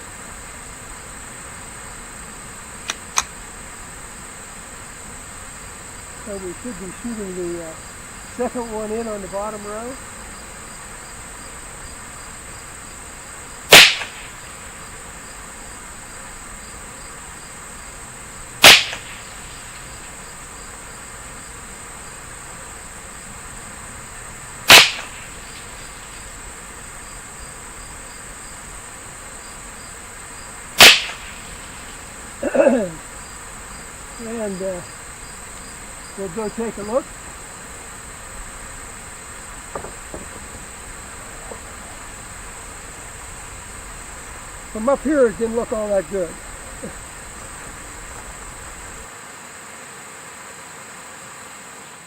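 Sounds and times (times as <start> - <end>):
high insect chirring: 0.0 - 49.1
rifle shots: 13.7 - 14.5, 18.6 - 20.2, 24.6 - 26.3, 30.8 - 32.2.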